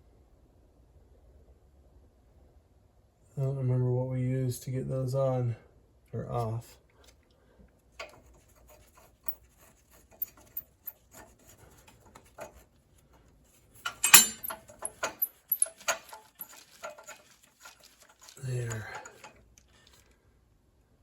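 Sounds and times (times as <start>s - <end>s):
hand tools clicking and rattling: 13.8s - 20.0s.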